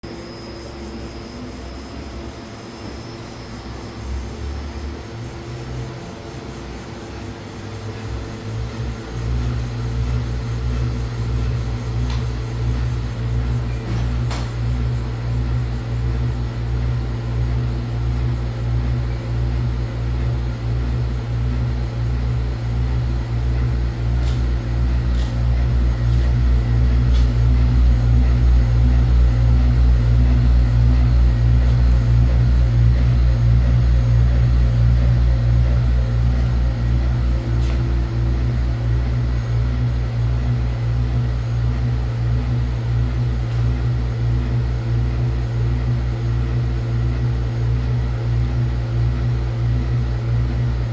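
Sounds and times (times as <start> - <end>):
washing machine rumbling: 2.2 - 50.9.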